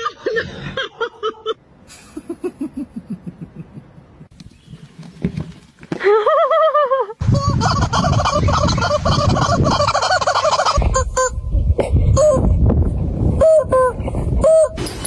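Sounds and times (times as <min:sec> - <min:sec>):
animal warbling calls: 0:07.4 - 0:11.4
loud low rumbling: 0:10.8 - 0:14.8.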